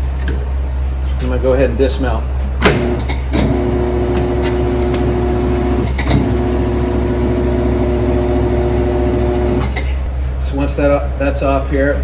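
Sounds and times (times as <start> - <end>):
tire changer motor humming: 2.1 - 12.0
motor stop click: 2.6 - 10.0.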